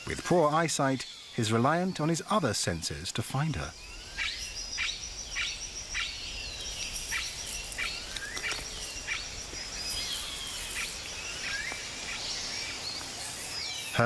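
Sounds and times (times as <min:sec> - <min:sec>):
downward-sweeping whistled calls: 0:00.0 - 0:14.0
high-pitched insect drone: 0:03.7 - 0:14.0.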